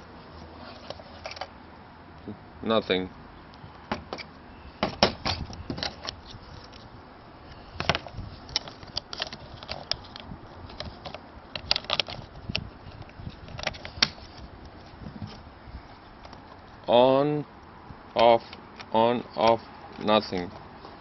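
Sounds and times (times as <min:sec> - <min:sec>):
hands handling plastic toy: 0:07.8 - 0:15.4.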